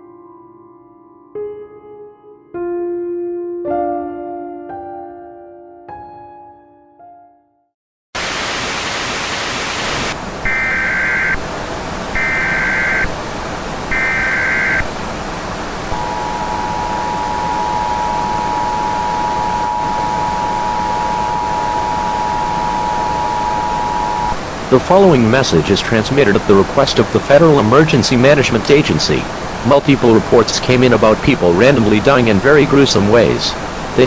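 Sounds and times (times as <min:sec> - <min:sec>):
static hiss: 0:08.2 - 0:34.0
buzzy data bursts: 0:09.8 - 0:24.4
steady two-tone attention signal: 0:10.5 - 0:11.4, 0:12.1 - 0:13.1, 0:13.9 - 0:14.9, 0:15.8 - 0:24.4.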